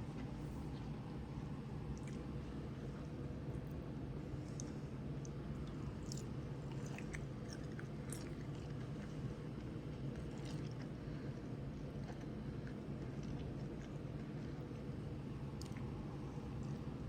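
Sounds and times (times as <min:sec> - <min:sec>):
steady low hum: 0:00.0 - 0:17.0
person chewing food: 0:04.4 - 0:16.9.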